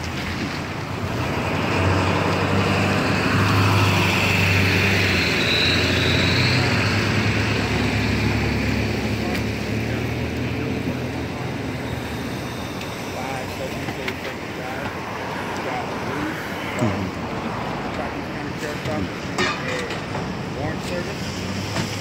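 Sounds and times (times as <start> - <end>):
road noise: 0.0 - 22.0.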